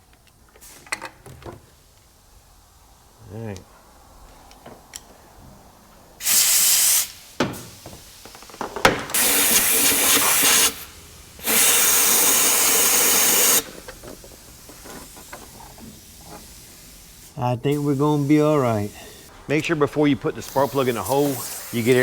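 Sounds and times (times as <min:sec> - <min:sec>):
compressed air blow gun blasting: 0:06.2 - 0:08.3, 0:09.0 - 0:19.4, 0:20.4 - 0:22.0.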